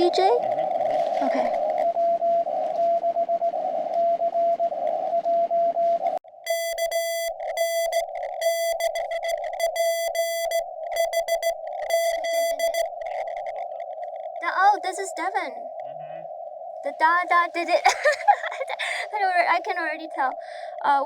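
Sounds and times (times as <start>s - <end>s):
buzzy keyed sidetone: 6.5s - 13.0s
morse code tone: 6.5s - 13.5s.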